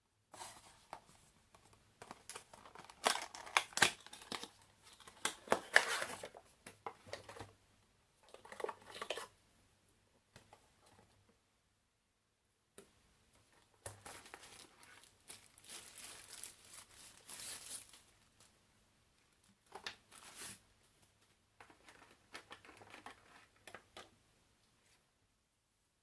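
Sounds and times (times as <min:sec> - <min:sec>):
packaging crinkling and rustling: 0:01.6 - 0:07.5, 0:08.3 - 0:09.3, 0:13.8 - 0:18.2.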